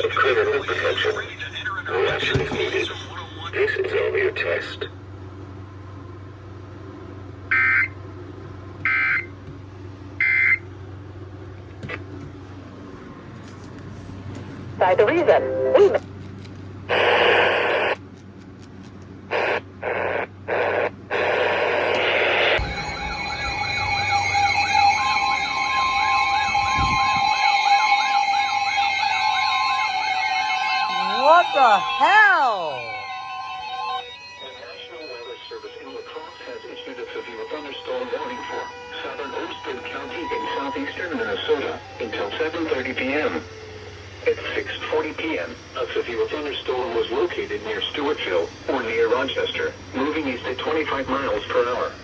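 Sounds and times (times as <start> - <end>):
steady tone: 21.1 - 44.7
screeching data bursts: 21.1 - 44.9
electronic siren warble: 21.2 - 44.6
higher steady tone: 21.3 - 44.2.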